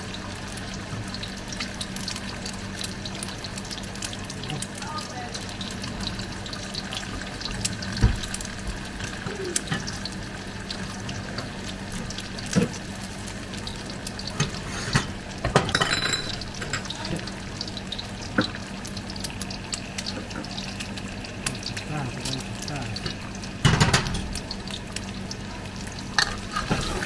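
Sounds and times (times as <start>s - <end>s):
water running from a tap: 0.0s - 27.0s
kitchenware clinking: 14.3s - 17.2s, 22.2s - 24.6s.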